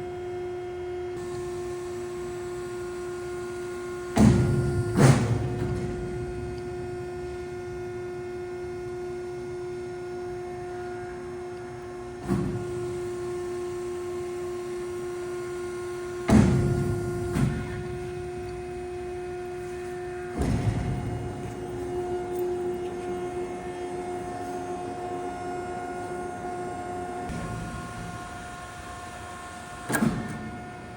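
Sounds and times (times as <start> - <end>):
machine hum: 0.0 - 30.9
machine clunks: 4.1 - 7.0, 16.2 - 24.2, 29.3 - 30.9.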